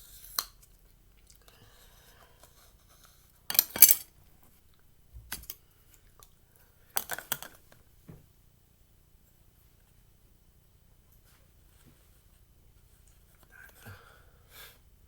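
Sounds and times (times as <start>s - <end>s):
scraping and clattering handling noise: 3.5s - 4.6s.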